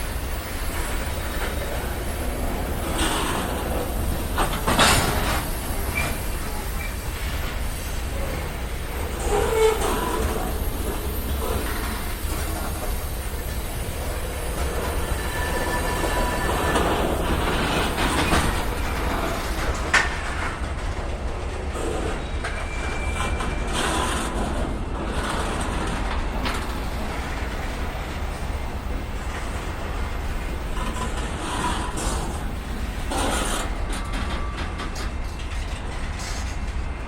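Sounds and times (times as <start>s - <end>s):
freight train cars rumbling: 0.0s - 37.0s
train wheels clacking: 0.0s - 37.0s
faint wheel squeal: 4.6s - 19.3s, 21.8s - 24.6s.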